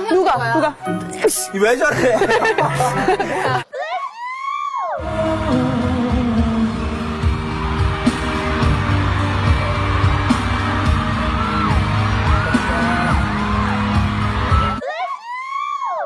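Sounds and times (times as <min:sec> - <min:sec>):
pop music with singing: 0:05.0 - 0:14.8.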